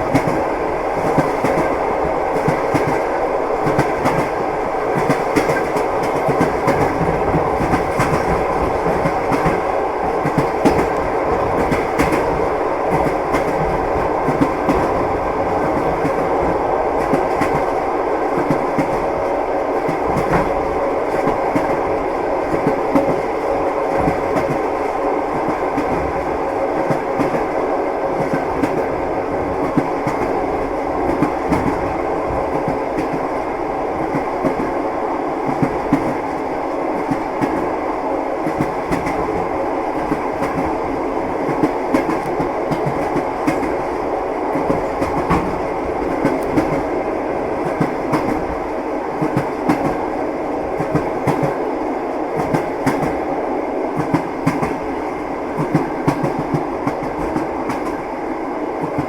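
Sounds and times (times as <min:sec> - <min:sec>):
train wheels clattering: 0:00.0 - 0:17.8.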